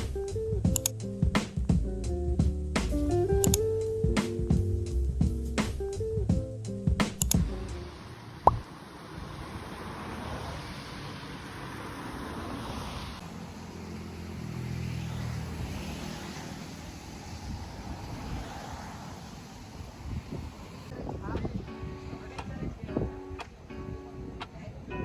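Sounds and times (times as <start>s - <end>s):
sharp click: 0.7s - 1.0s, 3.4s - 3.6s, 7.0s - 7.5s
strummed guitar music: 21.0s - 25.0s.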